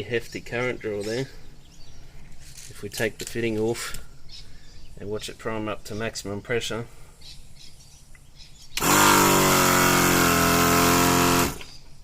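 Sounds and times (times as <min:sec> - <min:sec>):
air compressor running: 0:08.8 - 0:11.7.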